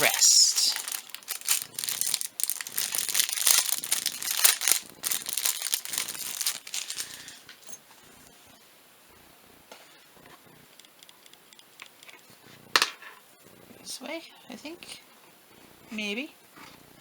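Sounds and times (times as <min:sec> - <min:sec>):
plastic packaging crinkling: 0:00.0 - 0:07.5.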